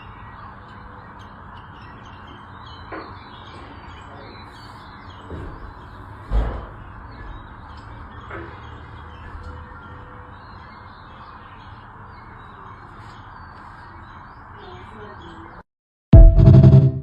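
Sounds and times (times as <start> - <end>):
birds chirping: 0.0 - 15.6
loud low thump: 16.2 - 17.0.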